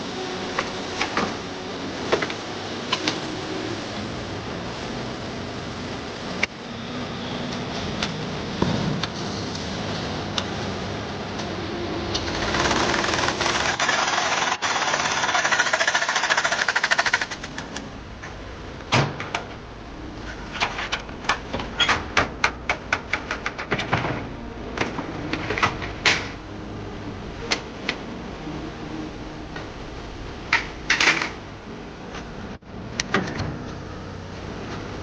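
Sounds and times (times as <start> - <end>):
tool buzzing rattle: 12.1 - 17.6.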